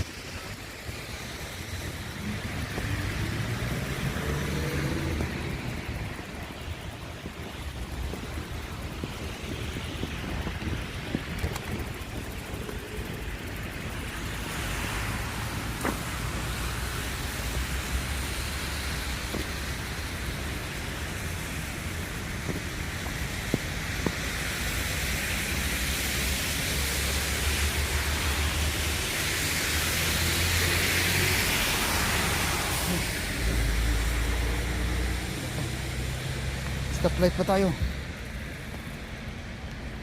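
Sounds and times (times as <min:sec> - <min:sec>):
wind buffeting microphone: 0:00.0 - 0:29.1.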